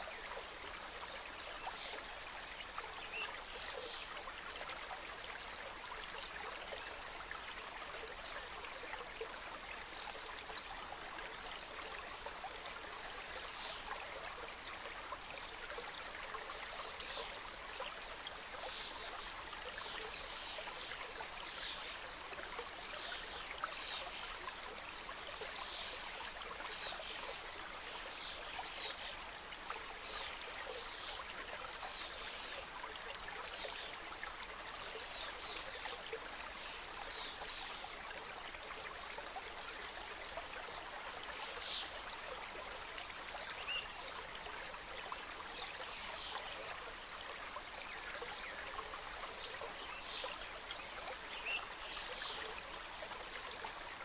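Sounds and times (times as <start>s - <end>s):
stream water rushing: 38.6s - 54.0s.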